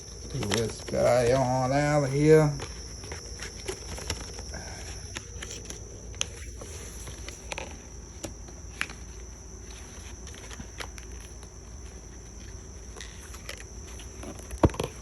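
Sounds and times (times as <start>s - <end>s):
faint high-pitched whine: 0.0s - 15.0s.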